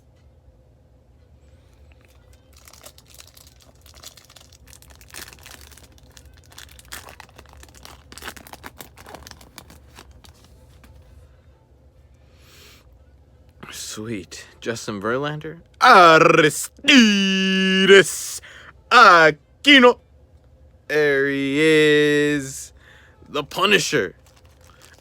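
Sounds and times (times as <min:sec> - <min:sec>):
foil wrapper tearing and crinkling: 0:02.3 - 0:11.0, 0:24.1 - 0:25.0.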